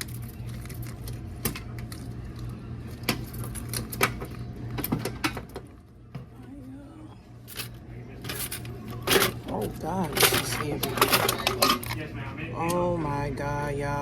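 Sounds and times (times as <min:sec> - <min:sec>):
steady low hum: 0:00.0 - 0:14.0
coins clinking in metal box: 0:10.0 - 0:11.9.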